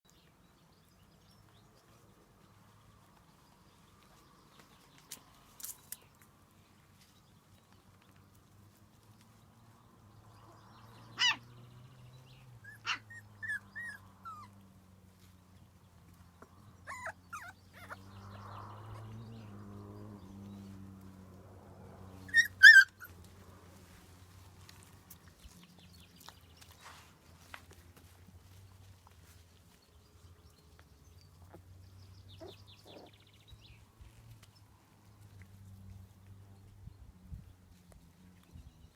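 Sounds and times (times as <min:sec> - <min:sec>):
puppies yelping and squeaking: 0:11.2 - 0:11.4, 0:12.6 - 0:14.6, 0:16.4 - 0:18.4, 0:22.2 - 0:23.3, 0:32.4 - 0:33.1.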